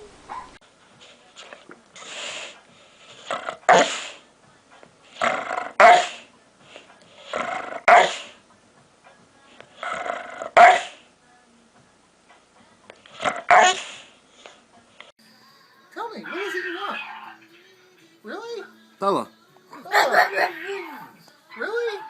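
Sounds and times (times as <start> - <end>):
dog huffing and barking: 7.3 - 8.3, 13.2 - 14.1.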